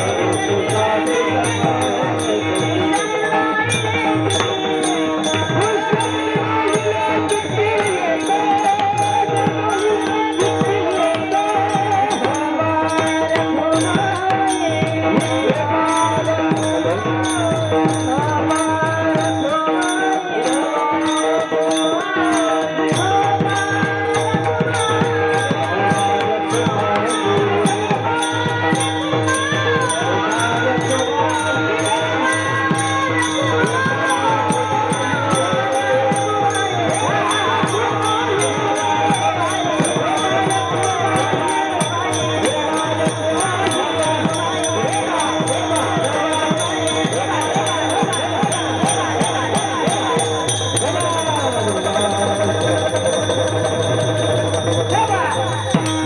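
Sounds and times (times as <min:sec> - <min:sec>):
hand cymbals struck: 0:00.0 - 0:56.0
drum rhythm: 0:32.4 - 0:56.0.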